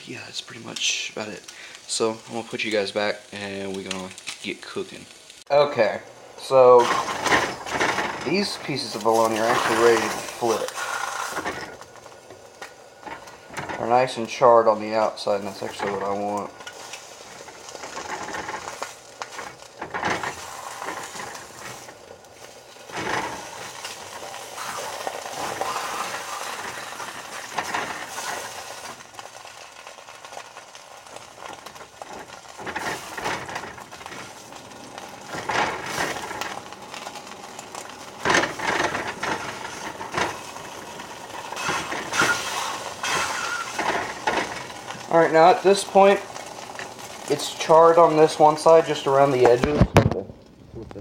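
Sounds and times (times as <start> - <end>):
meat sizzling in a skillet: 0.4 - 49.7
spatula scraping a pan: 6.8 - 11.8, 15.3 - 29.0, 38.2 - 46.6.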